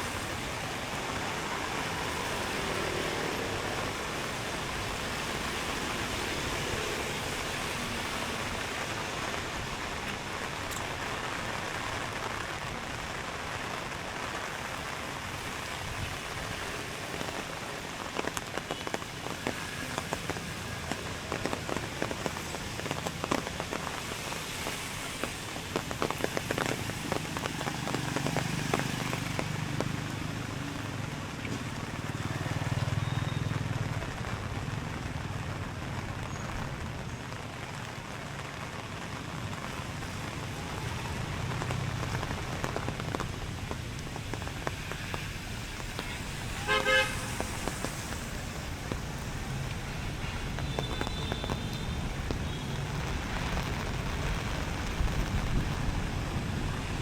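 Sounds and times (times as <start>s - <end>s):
steady rain falling: 0.0s - 57.0s
traffic rumbling: 0.0s - 57.0s
vehicle horn toot: 46.0s - 47.5s.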